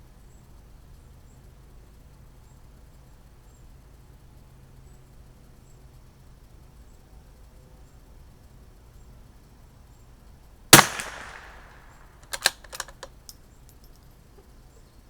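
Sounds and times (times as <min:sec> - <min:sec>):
rifle bolt metallic clicks: 0:10.8 - 0:13.1
rifle shot: 0:10.8 - 0:13.1.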